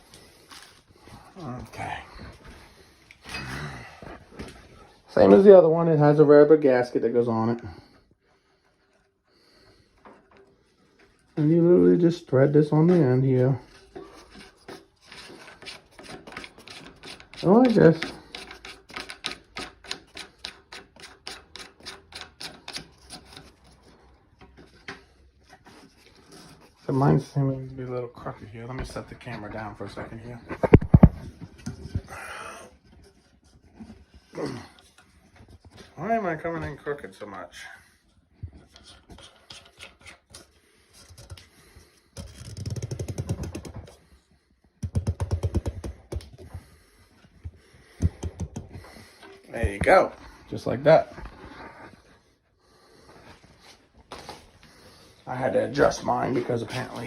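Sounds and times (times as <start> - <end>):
plastic parts clicking and knocking: 42.2 - 44.0, 44.8 - 46.6, 48.0 - 48.8.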